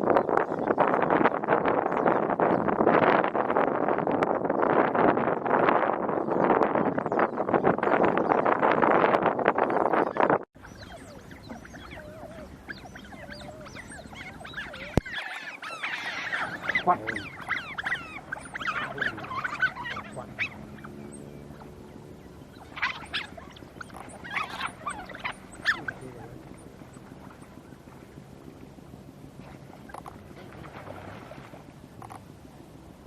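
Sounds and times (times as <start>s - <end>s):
otters chirping and squealing: 10.0s - 27.1s.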